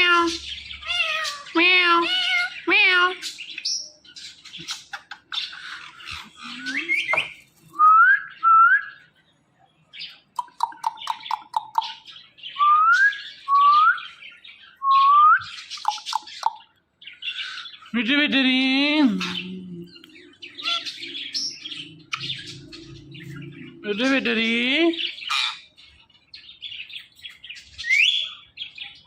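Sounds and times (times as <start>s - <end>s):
parakeet chirps: 0.0s - 7.5s, 10.0s - 12.4s, 15.5s - 17.9s, 19.0s - 29.0s
parakeet soft clicks and chatter: 4.4s - 7.8s, 10.3s - 12.2s, 15.6s - 16.7s.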